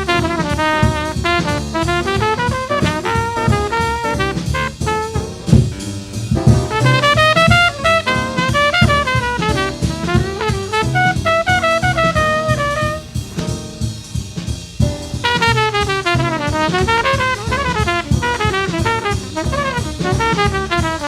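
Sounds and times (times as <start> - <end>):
drum kit: 0.0 - 21.0
fast jazz horn solo: 0.0 - 21.0.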